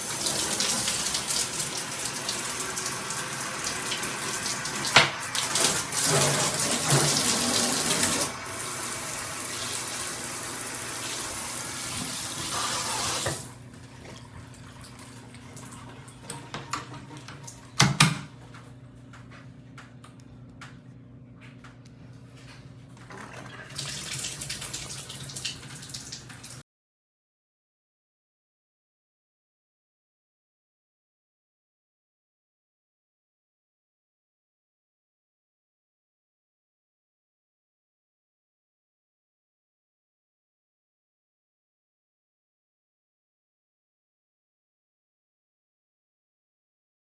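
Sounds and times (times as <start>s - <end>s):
water spraying from shower head: 0.0s - 13.6s.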